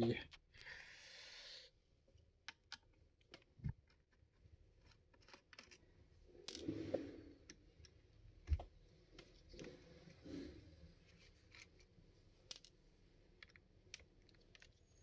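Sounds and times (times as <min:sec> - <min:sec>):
small plastic and metal clicks: 0:02.4 - 0:04.2, 0:04.8 - 0:05.8, 0:12.5 - 0:15.0.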